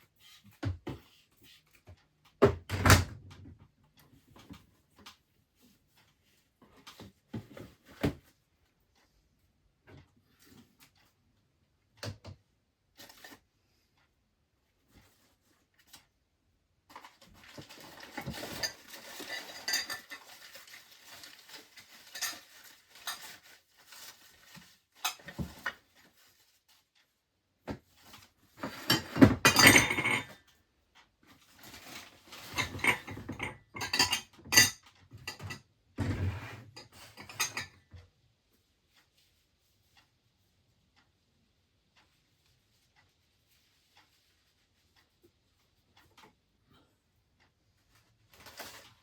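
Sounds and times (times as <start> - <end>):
dishes and cutlery clattering: 17.5 - 23.4, 28.6 - 30.4, 31.7 - 37.8.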